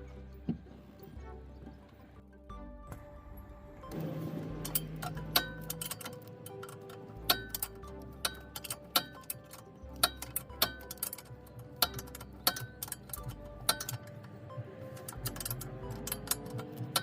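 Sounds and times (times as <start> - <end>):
low bass notes: 0.0 - 6.1, 15.1 - 16.7
ticking percussion beat: 3.8 - 17.0.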